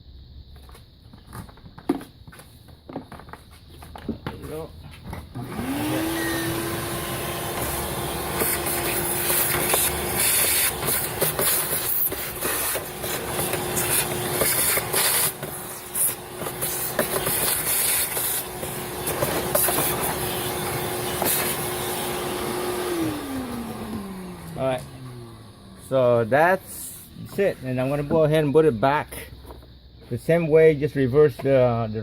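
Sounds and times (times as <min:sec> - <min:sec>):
vacuum motor spinning down: 0:05.3 - 0:28.2
vacuum cleaner running: 0:05.3 - 0:28.6.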